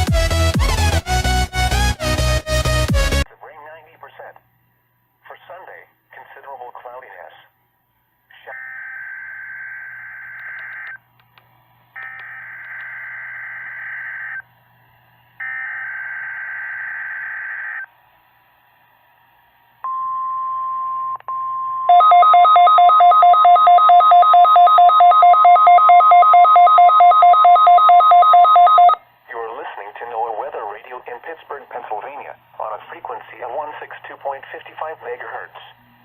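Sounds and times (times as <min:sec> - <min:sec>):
rapid two-tone electronic beeping: 0:21.7 - 0:29.0.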